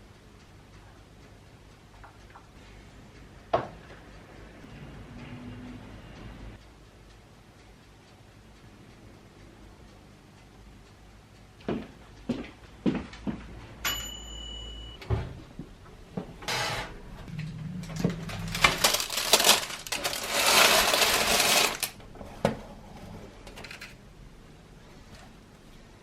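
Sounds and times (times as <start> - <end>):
clicks and clatter: 17.2 - 22.0, 23.4 - 24.0
loud rustling and scraping: 17.9 - 22.4.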